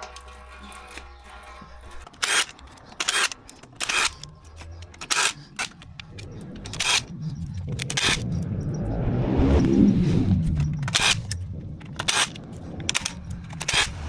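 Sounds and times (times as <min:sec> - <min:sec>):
power tool bursts: 0:00.0 - 0:07.1, 0:07.8 - 0:08.3, 0:10.8 - 0:14.0.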